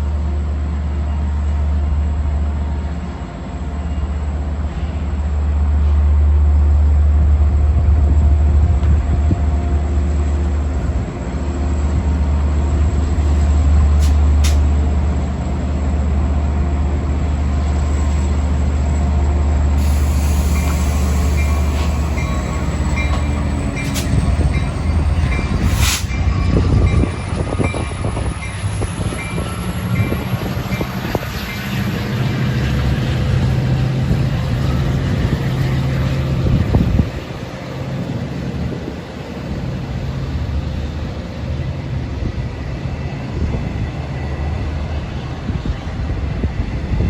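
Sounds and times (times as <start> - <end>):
rail cars rattling over track: 0.0 - 47.0.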